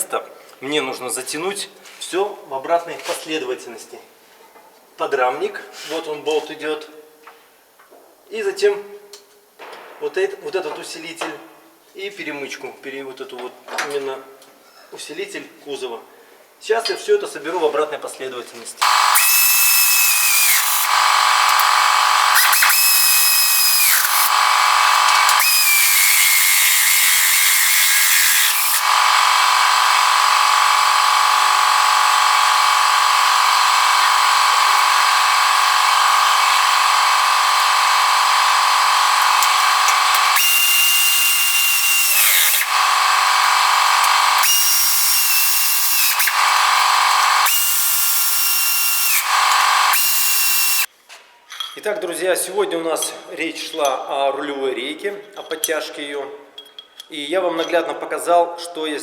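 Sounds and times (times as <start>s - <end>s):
power tool motor whining: 18.8s - 50.9s.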